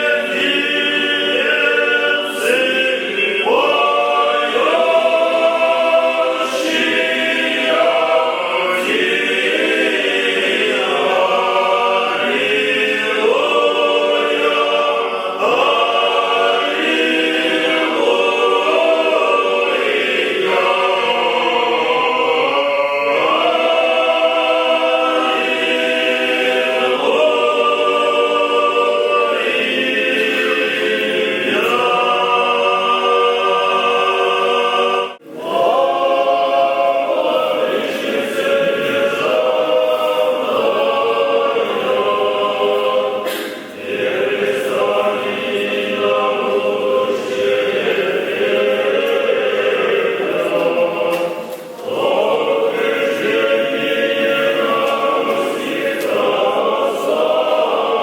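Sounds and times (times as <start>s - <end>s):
choir singing a cappella chant: 0.0s - 58.0s.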